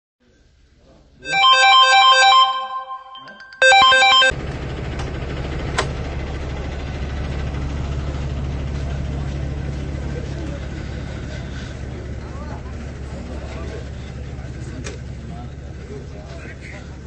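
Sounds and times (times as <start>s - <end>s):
short electronic melody: 1.3s - 4.3s.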